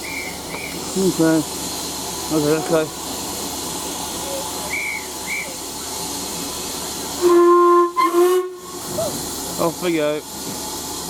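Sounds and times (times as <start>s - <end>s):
hiss of escaping steam: 0.0s - 11.0s
steam whistle: 7.2s - 8.9s.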